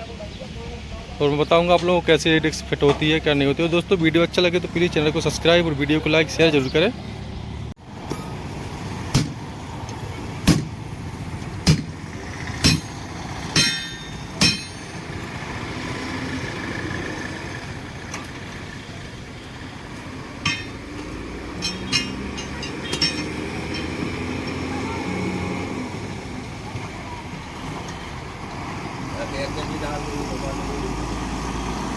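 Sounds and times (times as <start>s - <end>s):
hammer striking steel wheel: 8.0s - 9.4s, 12.6s - 15.0s, 21.6s - 24.0s.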